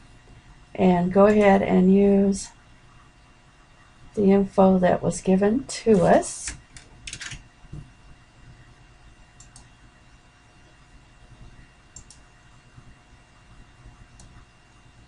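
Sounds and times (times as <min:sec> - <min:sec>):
room hiss and hum: 0:00.0 - 0:15.0
computer mouse clicking: 0:09.4 - 0:09.7, 0:11.9 - 0:12.3, 0:14.1 - 0:14.4.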